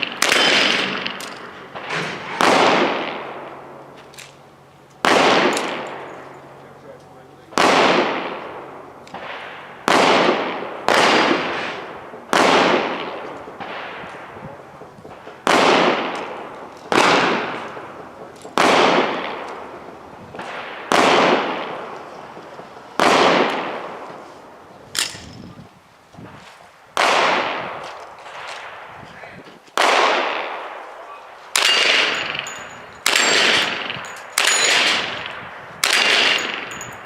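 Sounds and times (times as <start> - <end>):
sharp gunshot crack: 0.0 - 3.4, 5.0 - 6.1, 7.5 - 14.3, 15.1 - 19.7, 20.4 - 22.0, 23.0 - 24.0, 27.0 - 28.8, 29.8 - 30.8, 31.6 - 32.4, 33.0 - 36.7
gunshots echoing: 0.0 - 3.9, 5.0 - 6.4, 7.5 - 14.4, 15.1 - 22.1, 23.0 - 24.1, 27.0 - 28.9, 29.8 - 36.9.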